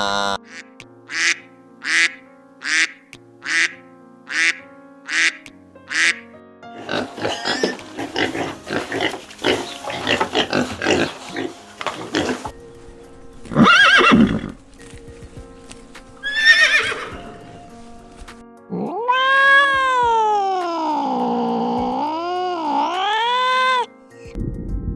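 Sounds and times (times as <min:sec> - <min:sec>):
soft background music: 0:00.0 - 0:24.9
horse whinnying: 0:06.8 - 0:12.5, 0:13.6 - 0:14.6, 0:16.2 - 0:17.7, 0:18.7 - 0:20.3
cat meowing: 0:18.7 - 0:21.3.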